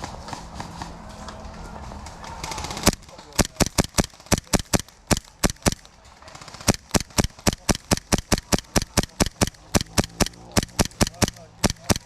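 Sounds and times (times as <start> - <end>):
airsoft guns firing sharp shots: 2.4 - 12.0.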